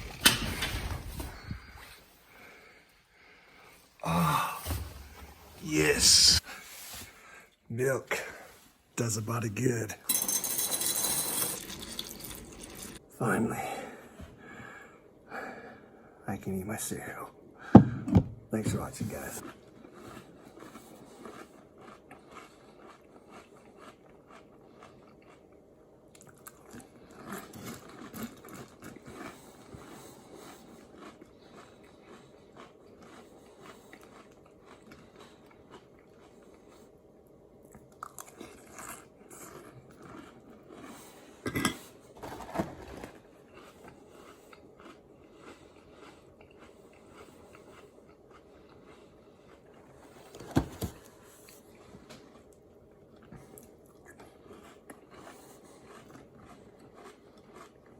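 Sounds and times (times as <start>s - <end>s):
person chewing crunchy cereal: 19.2s - 57.9s.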